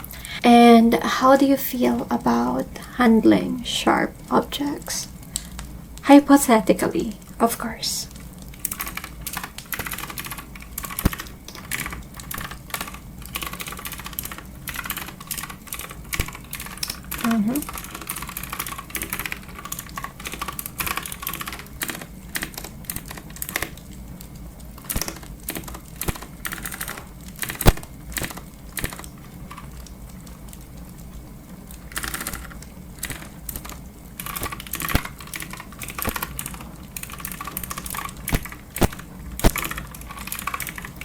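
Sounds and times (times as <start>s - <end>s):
clicky keyboard typing: 8.1s - 24.0s, 24.8s - 29.9s, 31.8s - 41.0s.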